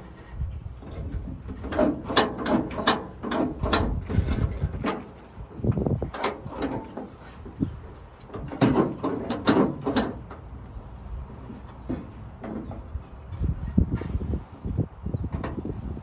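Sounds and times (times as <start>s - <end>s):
tools clicking and knocking: 8.2s - 10.4s.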